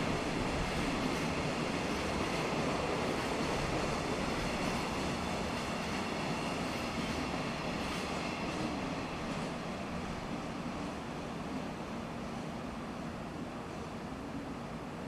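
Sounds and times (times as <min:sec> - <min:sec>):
wheels rattling on rails: 0:00.0 - 0:10.3
freight train rolling past: 0:00.0 - 0:15.0.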